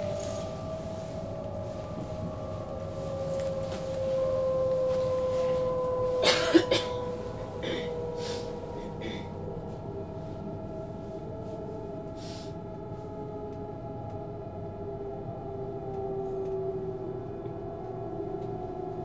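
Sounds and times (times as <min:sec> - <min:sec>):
electric motor whine: 0:00.0 - 0:14.2
train running rumble: 0:00.0 - 0:19.0
sharp coughing sounds: 0:06.2 - 0:08.0, 0:09.0 - 0:09.3.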